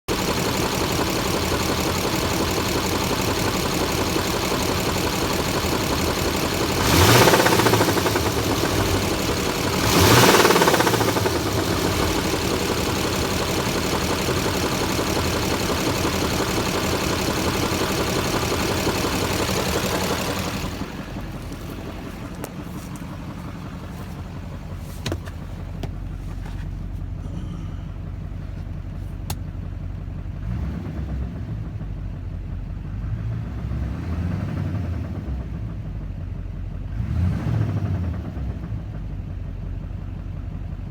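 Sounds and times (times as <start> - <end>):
diesel engine knocking and revving: 0.0 - 40.9.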